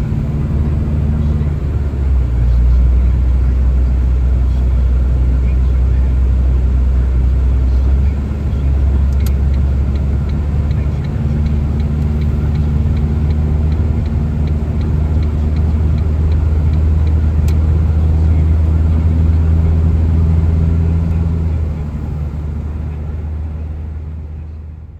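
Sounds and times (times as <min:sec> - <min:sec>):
car engine and road rumble: 0:00.0 - 0:24.9
light regular ticking: 0:08.5 - 0:18.8.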